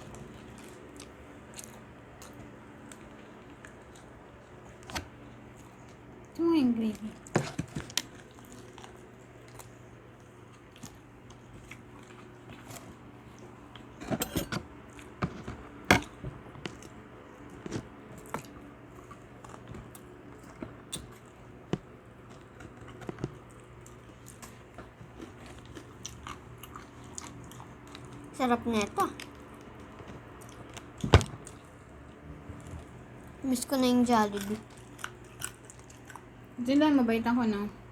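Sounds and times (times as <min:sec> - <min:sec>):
chewing and biting: 0:00.0 - 0:06.3, 0:07.2 - 0:28.4, 0:29.1 - 0:33.3, 0:34.1 - 0:36.6
faint steady hum: 0:00.0 - 0:37.9
cutlery and dishes clicking: 0:14.0 - 0:14.6.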